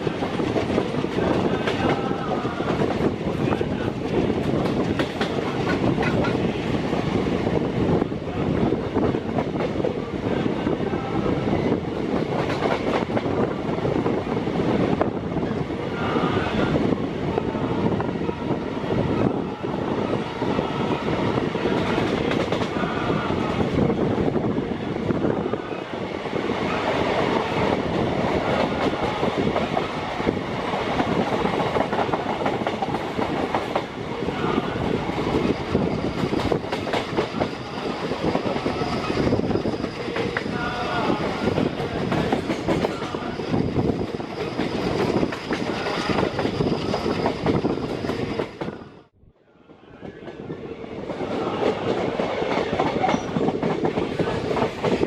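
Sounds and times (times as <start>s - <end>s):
train rumble: 0.0s - 55.0s
train wheels clattering over rail joints: 4.0s - 6.5s.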